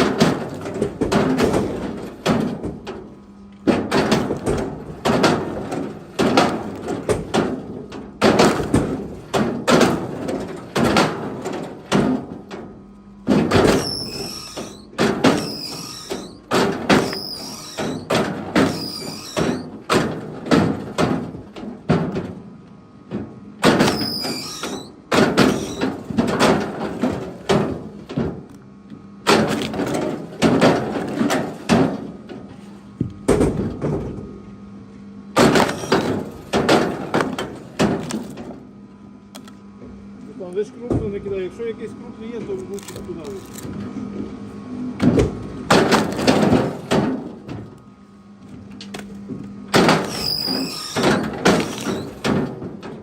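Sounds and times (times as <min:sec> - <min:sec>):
firewood thudding onto pile: 0:45.0 - 0:47.6.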